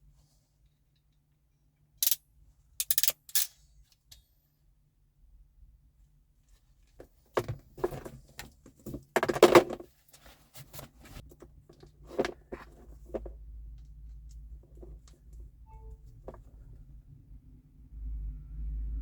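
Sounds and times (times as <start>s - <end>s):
tools and parts clattering: 2.8s - 4.2s, 7.4s - 9.9s.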